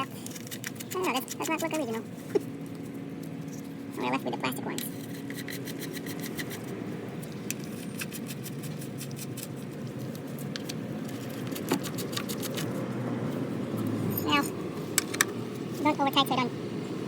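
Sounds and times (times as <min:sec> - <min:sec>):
metallic clicks and scrapes: 0:00.0 - 0:01.9, 0:04.8 - 0:12.8
steady background noise: 0:00.0 - 0:17.0.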